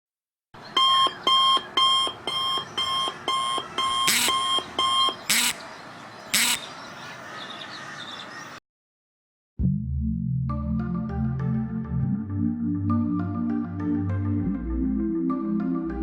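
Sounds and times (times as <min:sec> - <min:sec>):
electronic alarm beeping: 0:00.6 - 0:05.6, 0:06.4 - 0:06.7.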